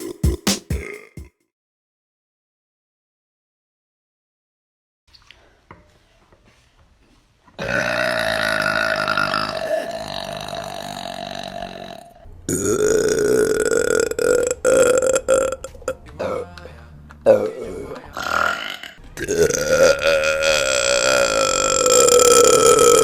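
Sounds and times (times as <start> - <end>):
woman burping loudly: 7.6 - 16.4, 17.3 - 23.0.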